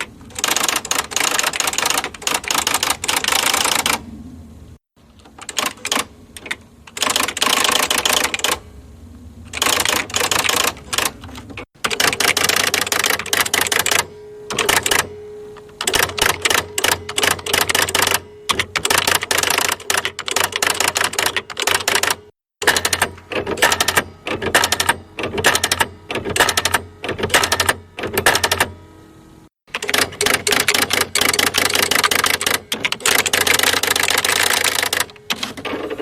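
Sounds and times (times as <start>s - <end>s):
typewriter keys clattering: 0.0s - 4.0s, 5.2s - 8.6s, 9.5s - 15.1s, 15.8s - 28.7s, 29.7s - 36.0s.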